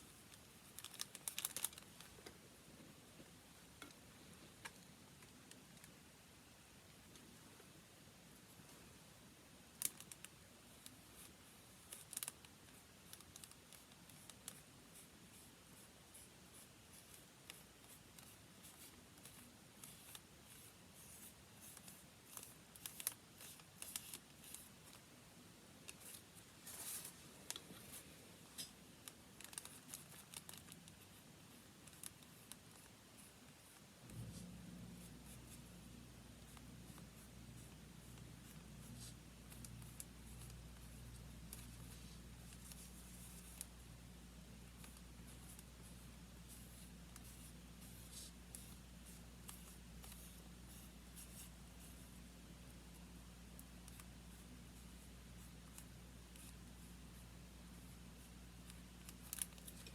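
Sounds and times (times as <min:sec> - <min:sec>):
paper handling clicks and rustles: 0:00.3 - 0:02.2, 0:11.9 - 0:14.6, 0:17.0 - 0:25.0, 0:28.6 - 0:34.4, 0:58.6 - 0:59.9.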